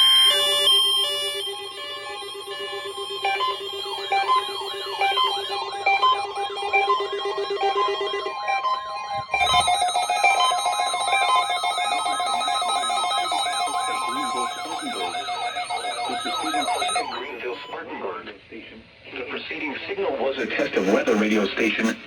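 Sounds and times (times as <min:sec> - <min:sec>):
pulsing lower tone: 0:00.0 - 0:17.7
repeating beeps: 0:00.0 - 0:17.7
steady high tone: 0:00.0 - 0:17.8
warbling siren-like sweeps: 0:00.6 - 0:17.7.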